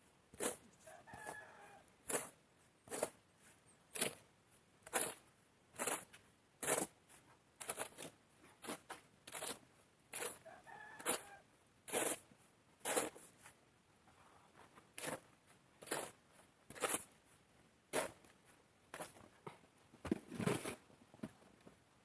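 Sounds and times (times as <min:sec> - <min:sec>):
regular crunching strokes: 0:00.3 - 0:19.6
rooster crowing: 0:00.9 - 0:01.8, 0:10.4 - 0:11.4.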